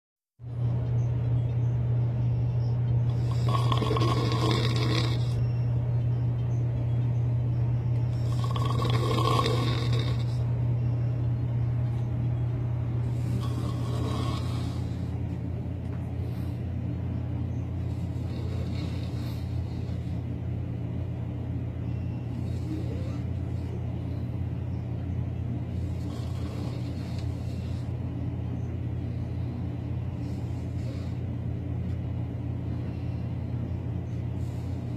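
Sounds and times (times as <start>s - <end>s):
steady low hum: 0.4s - 34.9s
man snoring heavily: 3.1s - 5.4s, 8.1s - 10.5s, 13.0s - 15.3s, 17.8s - 20.2s, 22.2s - 23.8s, 25.7s - 28.0s, 30.1s - 31.3s.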